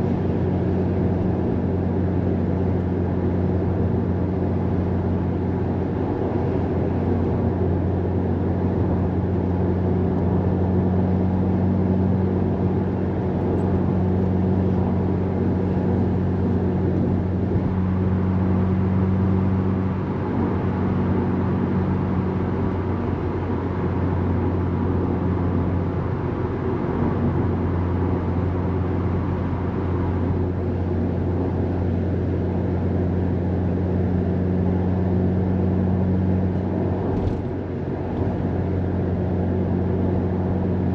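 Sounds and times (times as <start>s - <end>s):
car engine humming: 0.0s - 40.9s
tyre and road noise: 35.7s - 40.2s.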